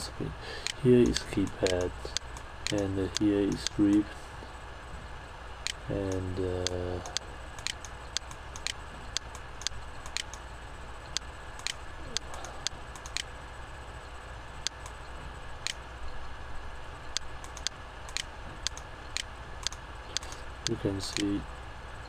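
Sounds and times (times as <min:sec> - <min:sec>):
low hum and hiss: 0:00.0 - 0:22.0
sharp dry clicks: 0:00.6 - 0:04.1, 0:05.6 - 0:10.5, 0:11.1 - 0:13.3, 0:14.6 - 0:15.0, 0:15.6 - 0:15.8, 0:17.1 - 0:21.4.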